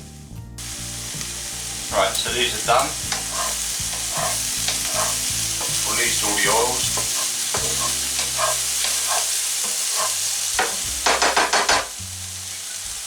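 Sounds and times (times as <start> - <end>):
food sizzling in a frying pan: 0.6 - 13.0
utensil scraping against pan: 2.2 - 11.9.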